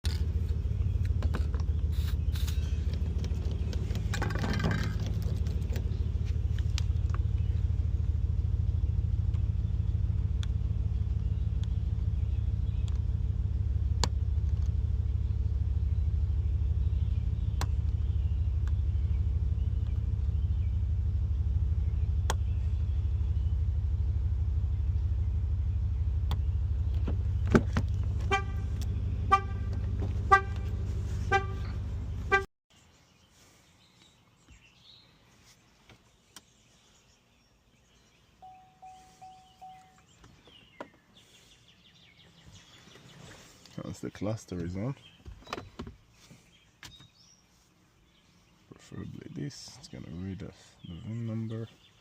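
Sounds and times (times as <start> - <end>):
steady low rumble: 0.0 - 32.5
car alarm horn pulsing: 28.1 - 32.5, 38.4 - 40.1
short beep: 38.4 - 40.0.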